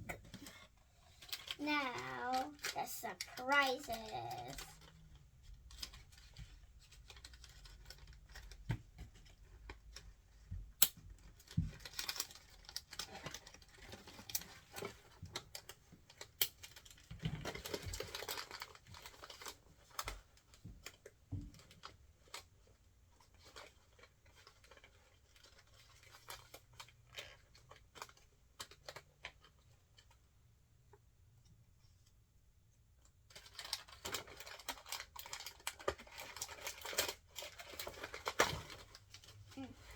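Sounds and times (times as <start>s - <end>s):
plastic crinkling and tearing: 5.7s - 8.6s, 15.6s - 20.1s, 33.3s - 39.9s.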